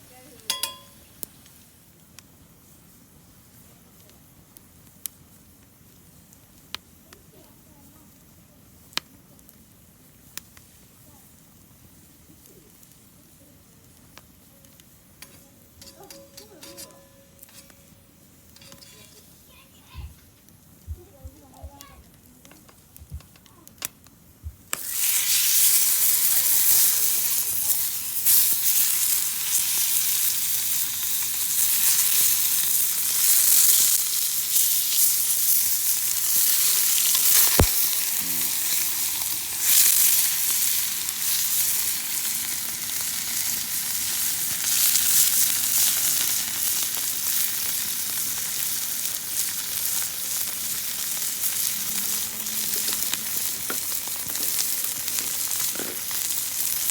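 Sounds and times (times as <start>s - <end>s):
steak sizzling in a pan: 24.7s - 56.9s.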